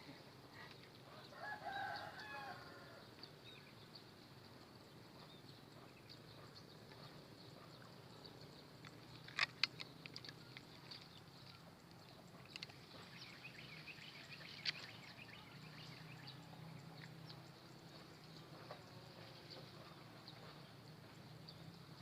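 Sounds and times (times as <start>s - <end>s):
rooster crowing: 1.3s - 3.0s.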